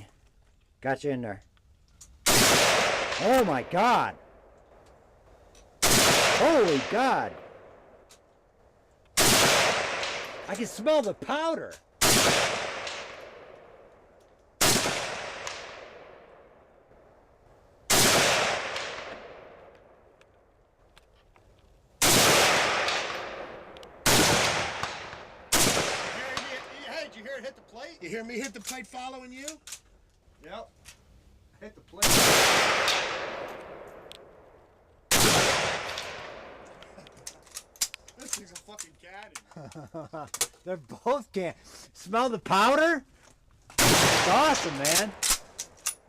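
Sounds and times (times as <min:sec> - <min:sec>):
rifle shots with echo: 0:02.2 - 0:04.5, 0:05.8 - 0:08.0, 0:09.2 - 0:10.6, 0:12.0 - 0:13.8, 0:14.6 - 0:16.6, 0:17.9 - 0:20.0, 0:22.0 - 0:27.3, 0:32.0 - 0:34.4, 0:35.1 - 0:36.8, 0:43.8 - 0:45.6.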